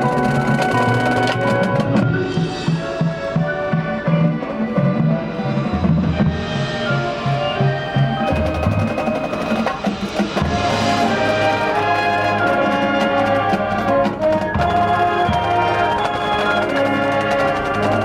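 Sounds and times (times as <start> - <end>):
marching drums and percussion: 0.0 - 18.0
brass sustained chords: 10.3 - 18.0.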